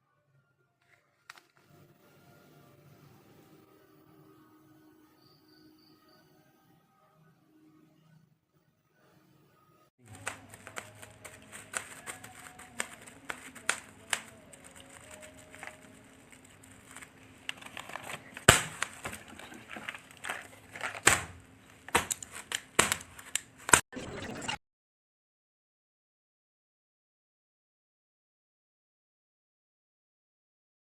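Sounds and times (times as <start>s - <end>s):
plastic packaging crinkling: 10.0s - 23.8s.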